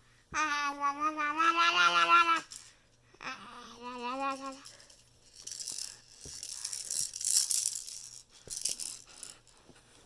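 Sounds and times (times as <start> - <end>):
rattling shaken sound: 2.2 - 2.8, 3.8 - 9.7.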